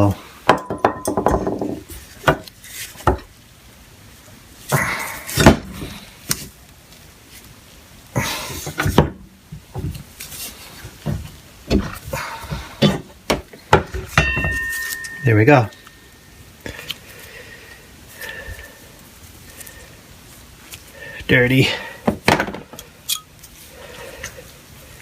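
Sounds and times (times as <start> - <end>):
metal knocks and clanks: 0.5 - 2.4, 12.8 - 15.2.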